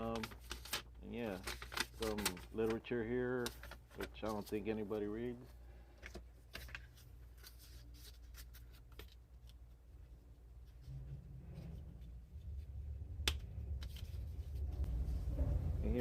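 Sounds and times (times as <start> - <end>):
low handling rumble: 10.8 - 16.0.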